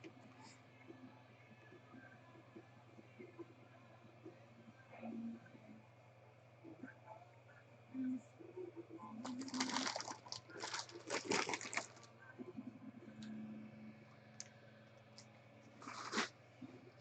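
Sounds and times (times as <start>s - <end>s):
plastic wrapping crinkling: 9.2s - 12.1s, 15.8s - 16.3s.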